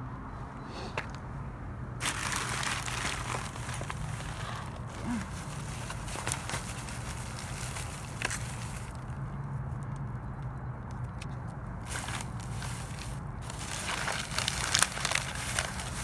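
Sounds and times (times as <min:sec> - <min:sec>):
trash knocking and crinkling: 0:02.0 - 0:09.1, 0:11.8 - 0:16.0.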